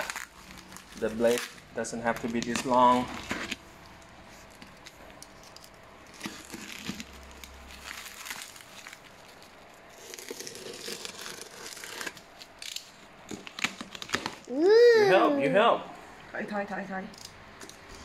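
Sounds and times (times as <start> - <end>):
packaging wrap crinkling and tearing: 0.0 - 14.6.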